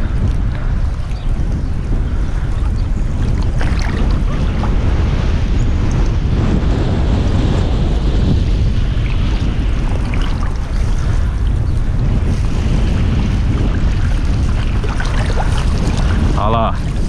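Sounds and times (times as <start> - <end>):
surf washing: 0.0 - 17.0
wind buffeting microphone: 0.0 - 17.0.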